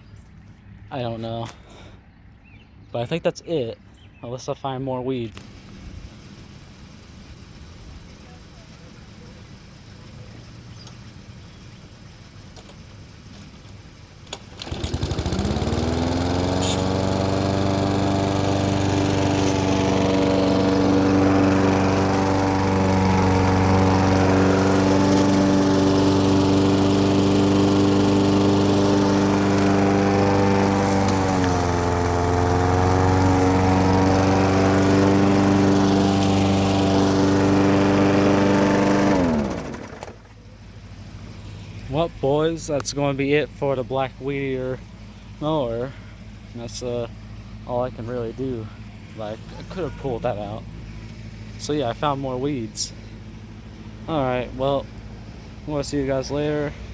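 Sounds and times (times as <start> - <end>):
mower engine running: 14.2 - 42.3, 43.4 - 56.9.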